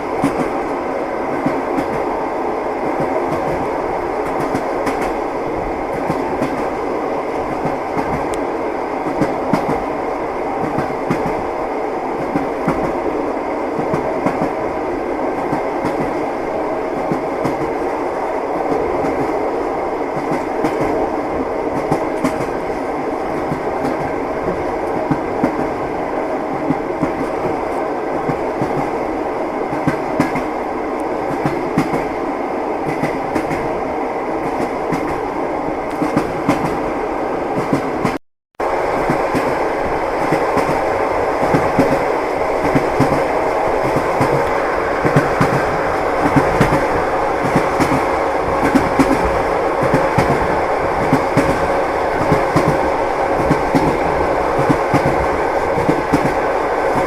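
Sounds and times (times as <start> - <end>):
train wheels clickety-clack: 0.0 - 2.1, 2.8 - 5.3, 5.9 - 9.9, 10.6 - 11.5, 12.2 - 13.1, 13.8 - 14.7, 15.3 - 18.0, 18.6 - 19.4, 20.1 - 29.0, 29.7 - 32.2, 32.8 - 33.8, 34.4 - 35.2, 35.9 - 36.8, 37.5 - 38.2, 38.9 - 57.0.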